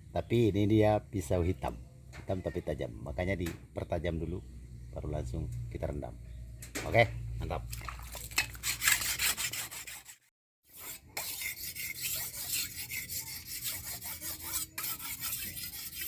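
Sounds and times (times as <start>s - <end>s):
knife blade being sharpened: 8.6s - 16.0s.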